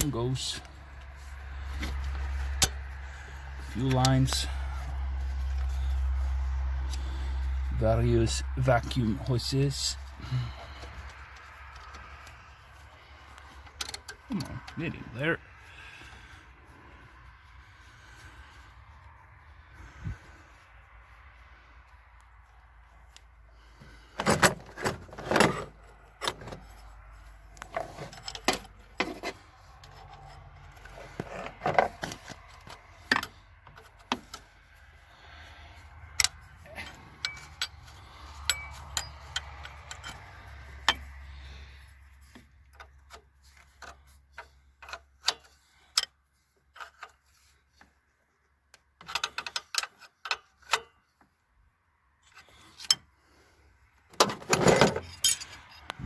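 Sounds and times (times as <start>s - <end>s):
metallic clicks of tools and parts: 0.0s - 6.0s, 13.3s - 14.8s, 24.2s - 34.5s, 36.0s - 41.4s, 42.3s - 47.9s, 48.7s - 51.3s, 52.2s - 53.1s, 54.1s - 56.0s.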